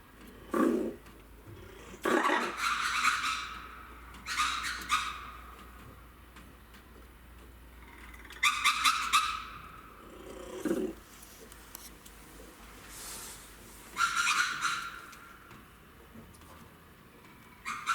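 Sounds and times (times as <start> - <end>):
lemurs giving harsh pulsing calls: 2.0 - 5.6, 7.8 - 11.0, 13.9 - 15.4, 17.5 - 17.9.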